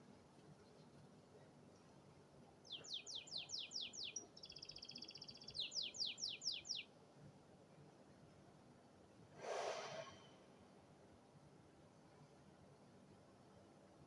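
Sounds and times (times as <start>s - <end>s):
canary singing: 2.7s - 6.8s.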